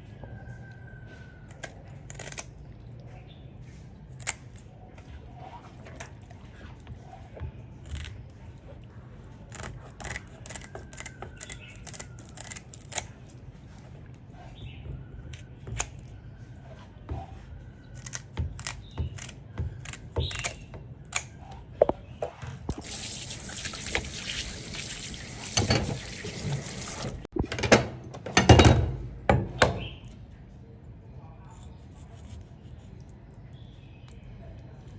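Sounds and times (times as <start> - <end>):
water running from a tap: 22.7 - 27.3.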